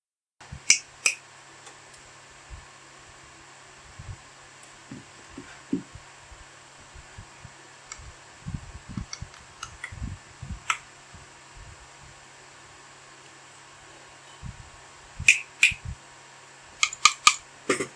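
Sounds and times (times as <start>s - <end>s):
muted mechanical keyboard typing: 16.8s - 17.4s.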